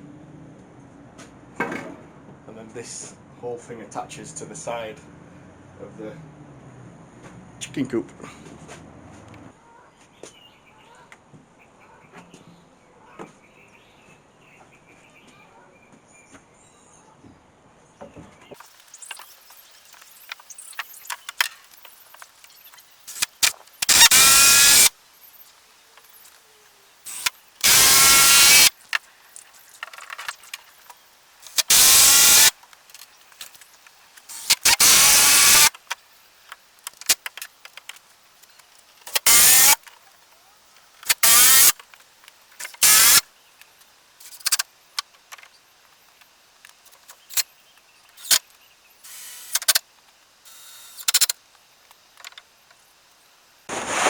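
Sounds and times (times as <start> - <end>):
handling knocks and clicks: 1.6 - 2.2
power drill bursts: 23.1 - 24.9, 27.1 - 28.7, 31.5 - 32.6, 34.3 - 35.7, 39.1 - 39.8, 41.0 - 41.8, 42.7 - 43.2, 53.7 - 54.0.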